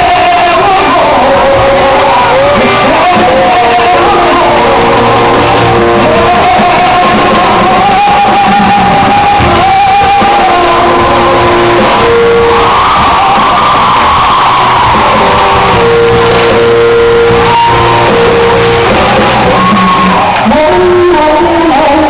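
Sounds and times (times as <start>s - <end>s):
woman singing: 0.0s - 12.0s
guitar and band accompaniment: 0.0s - 22.0s.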